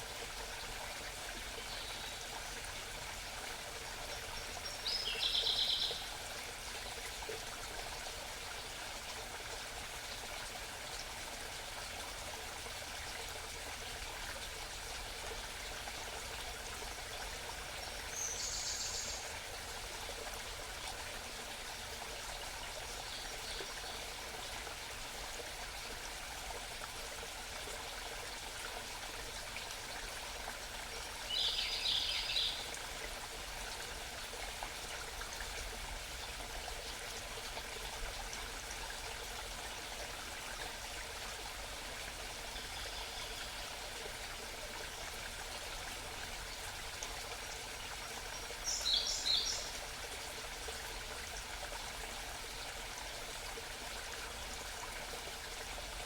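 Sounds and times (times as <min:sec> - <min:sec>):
mountain stream babbling: 0:00.0 - 0:56.0.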